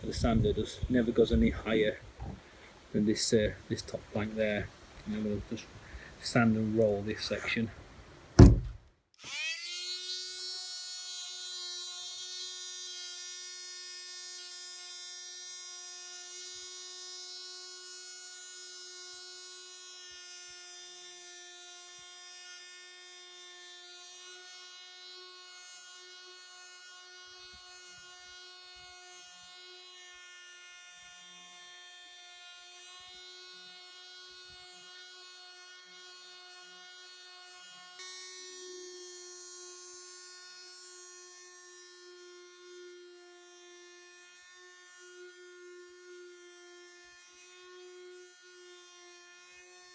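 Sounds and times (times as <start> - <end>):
electric sander motor whine: 9.2 - 12.6, 37.1 - 49.9.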